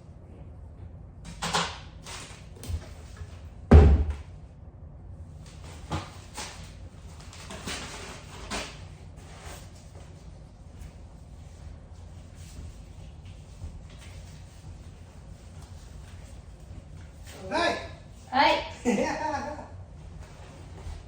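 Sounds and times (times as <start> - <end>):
knocks and thumps indoors: 3.6 - 4.3.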